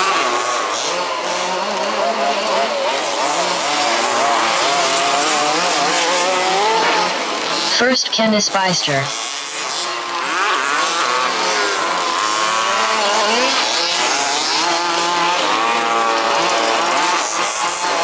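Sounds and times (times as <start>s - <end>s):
small two-stroke engines revving: 0.0s - 7.7s, 9.1s - 18.0s.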